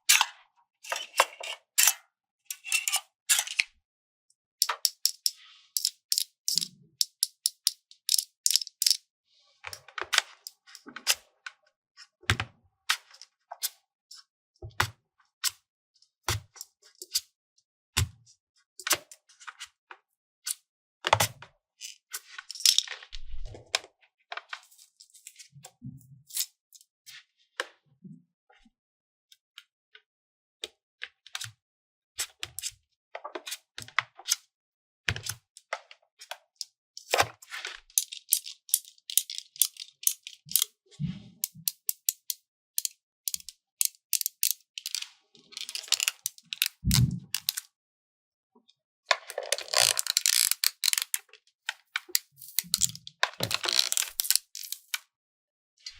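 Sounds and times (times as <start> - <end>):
plastic toy pieces clicking: 4.6 - 9.0, 22.5 - 22.9, 37.9 - 40.7, 41.5 - 47.7, 49.3 - 55.0.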